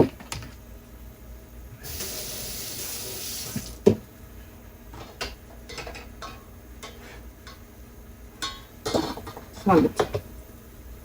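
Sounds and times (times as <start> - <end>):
kitchen faucet running: 1.8 - 3.9.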